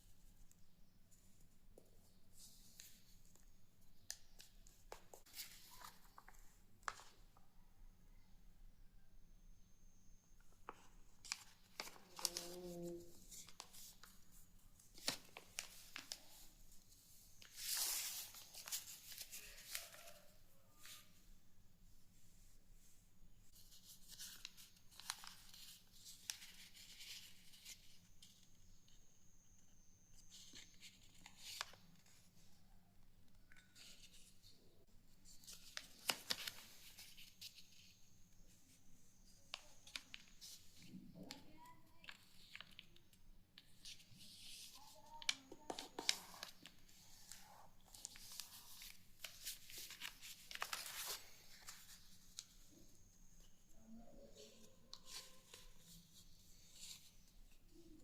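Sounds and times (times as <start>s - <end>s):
paper rustling and crinkling: 4.1s - 7.4s, 10.6s - 21.1s, 23.5s - 28.5s, 35.2s - 38.0s, 39.5s - 58.0s.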